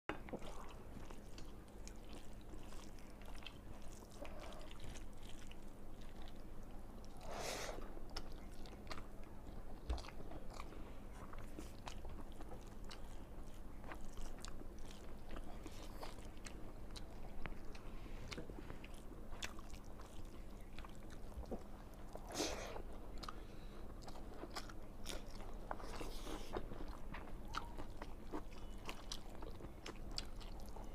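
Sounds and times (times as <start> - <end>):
person chewing and biting: 24.0 - 30.9.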